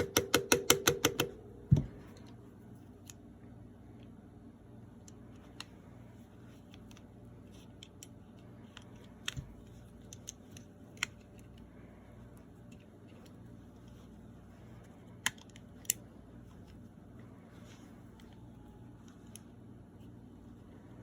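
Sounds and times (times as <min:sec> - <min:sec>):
faint low hum: 0:01.2 - 0:21.0
small metal clicks of pistol parts: 0:06.6 - 0:11.7, 0:15.2 - 0:16.1.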